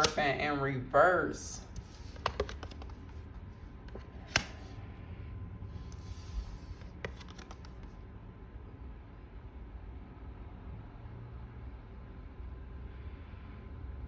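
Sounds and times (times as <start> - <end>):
cards clicking and tapping: 0.0 - 0.4, 1.7 - 4.8, 5.9 - 8.0
cards rustling: 0.0 - 0.4, 1.6 - 4.8, 5.8 - 8.0.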